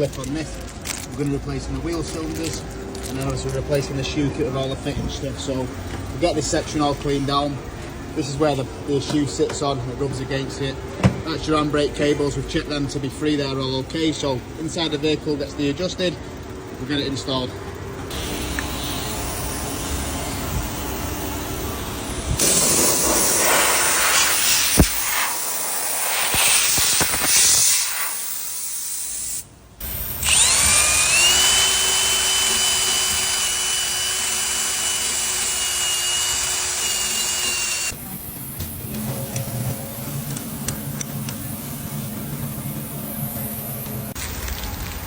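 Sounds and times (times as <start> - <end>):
power tool grinding and whining: 18.1 - 25.0, 29.8 - 38.0.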